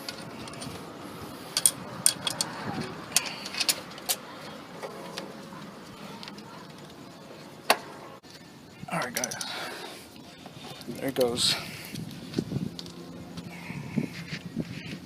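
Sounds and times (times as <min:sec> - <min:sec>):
metallic clicks of bolt and tools: 0:01.5 - 0:04.2, 0:09.0 - 0:09.6.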